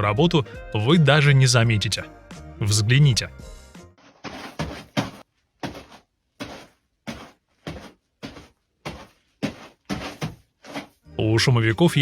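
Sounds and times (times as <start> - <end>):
scuffing footsteps: 4.0 - 11.0.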